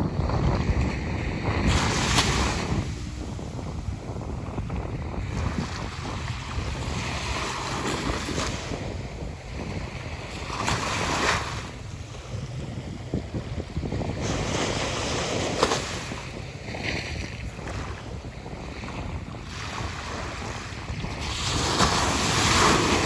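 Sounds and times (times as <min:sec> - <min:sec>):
ocean waves washing onto beach: 0:00.0 - 0:23.0
wind buffeting microphone: 0:00.0 - 0:23.0
breaking surf: 0:21.2 - 0:23.0.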